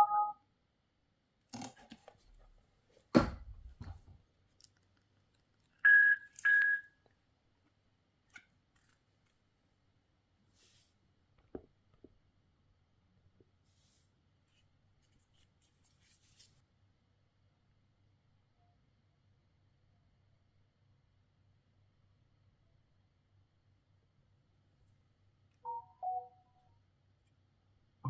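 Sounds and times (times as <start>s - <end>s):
short high beeps: 0.0s - 0.4s, 5.9s - 6.9s.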